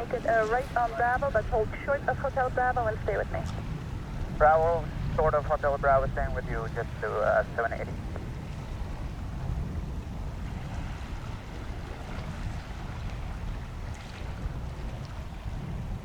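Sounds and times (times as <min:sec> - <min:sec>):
low airport rumble: 0:00.0 - 0:10.4.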